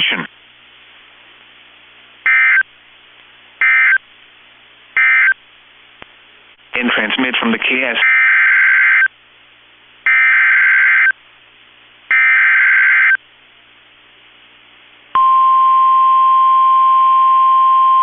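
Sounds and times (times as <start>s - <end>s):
screechy digital data bursts: 2.3s - 2.6s, 3.6s - 4.0s, 5.0s - 5.4s, 8.0s - 9.1s, 10.1s - 11.2s, 12.1s - 13.2s
steady warning alarm tone: 2.3s - 2.6s, 3.6s - 4.0s, 5.0s - 5.4s, 8.0s - 9.1s, 10.1s - 11.2s, 12.1s - 13.2s.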